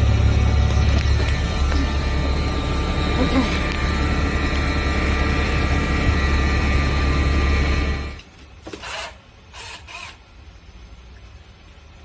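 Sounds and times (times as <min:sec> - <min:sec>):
loud mechanical drone: 0:00.0 - 0:08.2.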